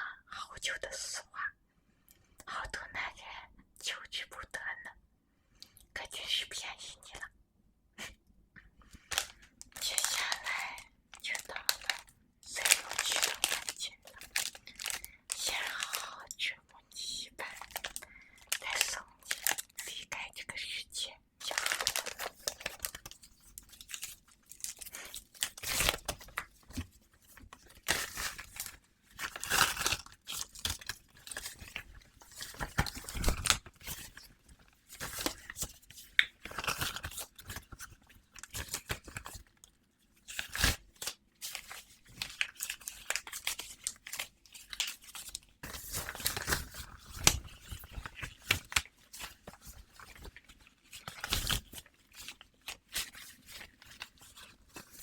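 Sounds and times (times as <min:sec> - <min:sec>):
tearing and crinkling rasps: 0:11.3 - 0:16.0, 0:27.6 - 0:34.3, 0:40.2 - 0:55.0.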